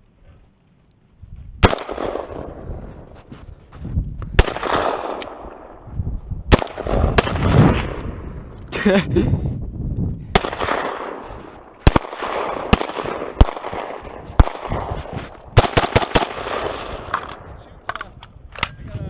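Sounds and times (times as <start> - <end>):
gunshots with echo: 1.6 - 2.8, 4.4 - 5.9, 6.5 - 8.4, 10.3 - 17.7.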